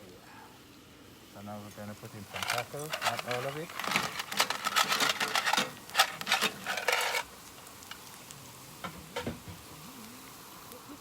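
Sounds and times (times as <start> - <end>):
faint sizzle: 0.0 - 11.0
shellfish clattering in a pan: 2.0 - 9.7.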